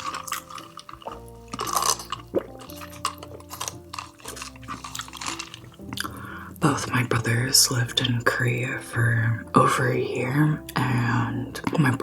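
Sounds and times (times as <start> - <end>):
wet chewing and mouth smacks: 0.0 - 6.6
soft background music: 0.0 - 12.0.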